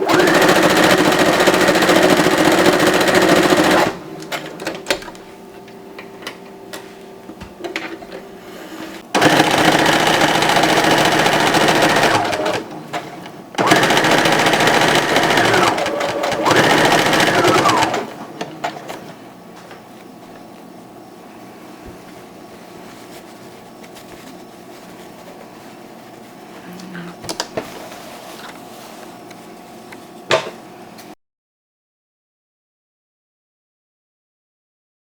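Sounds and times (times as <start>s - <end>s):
sewing machine stitching: 0.0s - 5.0s, 9.1s - 19.0s.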